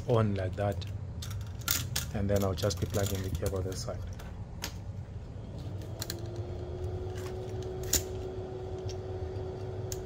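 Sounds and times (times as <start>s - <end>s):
faint hum: 0.0s - 10.0s.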